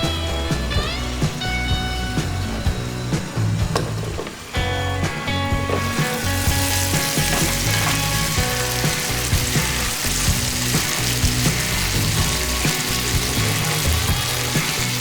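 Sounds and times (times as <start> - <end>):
background music: 0.0 - 15.0
food sizzling: 0.5 - 15.0.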